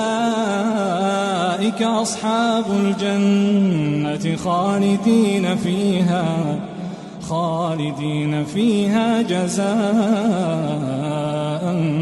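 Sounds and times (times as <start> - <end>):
person chanting recitation: 0.0 - 12.0.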